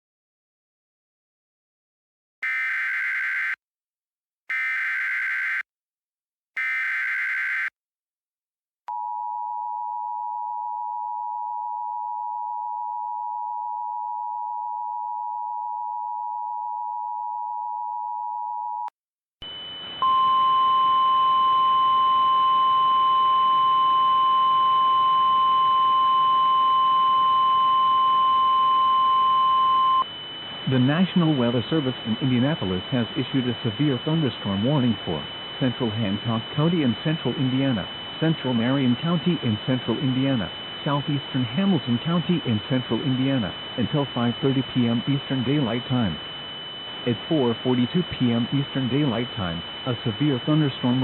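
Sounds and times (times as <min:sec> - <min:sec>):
static hiss with high whine: 0:30.1 - 0:51.0.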